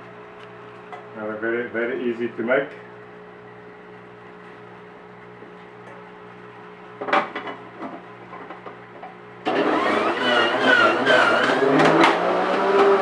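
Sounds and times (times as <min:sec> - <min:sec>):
electric juicer motor whining: 0:09.4 - 0:13.0.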